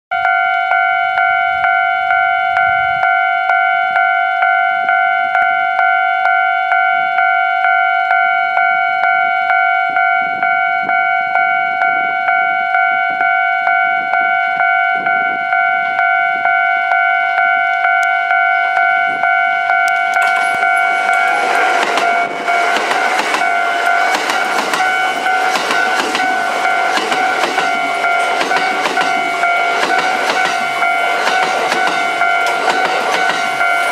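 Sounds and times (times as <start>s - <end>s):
level crossing bell dinging: 0.1s - 33.9s
train wheels over rail joints: 17.4s - 33.9s.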